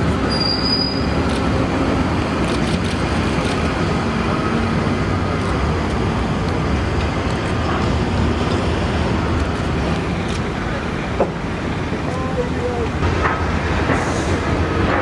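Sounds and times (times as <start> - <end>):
heavy vehicle engines running: 0.0 - 15.0.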